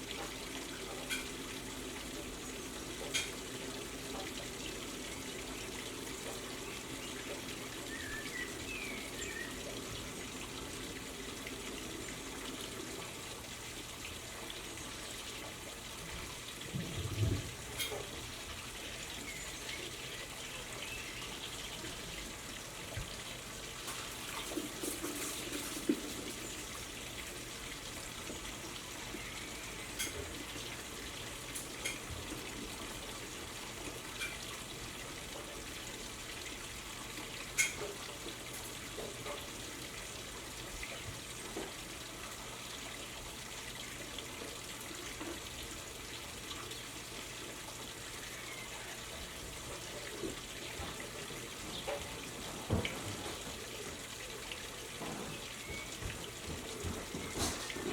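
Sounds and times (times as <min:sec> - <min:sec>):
small birds chirping: 0:06.6 - 0:09.7.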